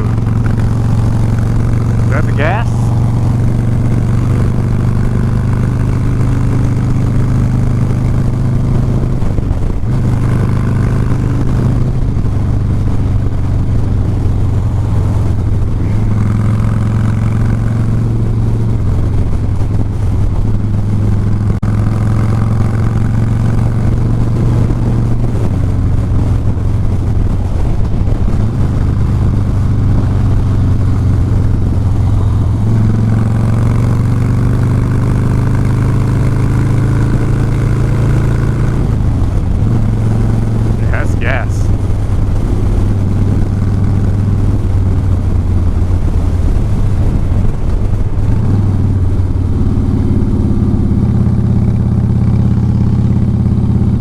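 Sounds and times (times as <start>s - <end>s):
motorcycle engine revving: 0.0s - 19.4s, 28.7s - 41.0s.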